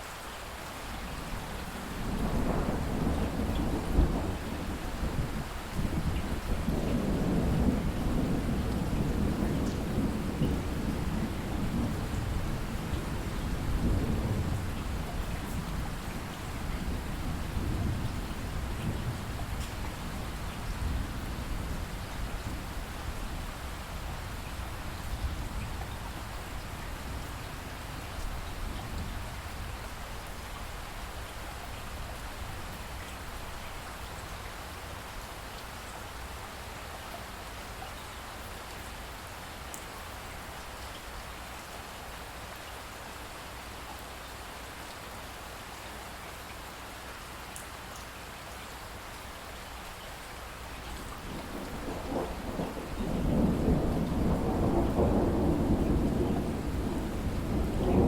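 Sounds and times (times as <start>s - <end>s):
steady rain falling: 0.0s - 58.0s
rolling thunder: 2.0s - 21.9s, 51.1s - 58.0s.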